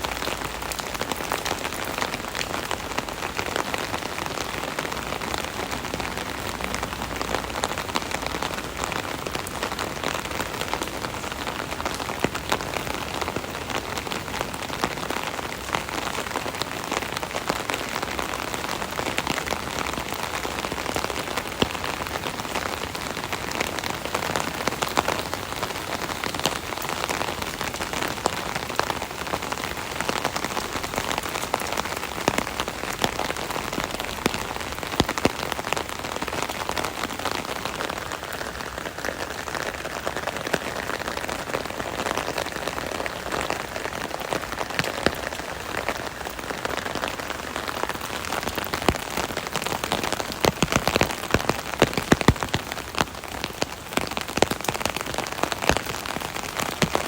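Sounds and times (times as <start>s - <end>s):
rain drumming on umbrella: 0.0s - 57.0s.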